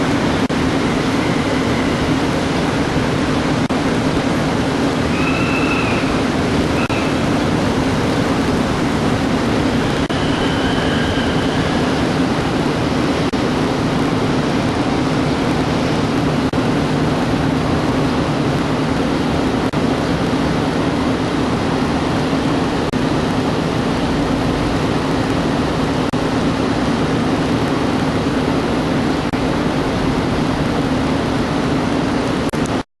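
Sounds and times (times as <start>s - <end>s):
vehicle road and engine noise: 0.0s - 32.8s.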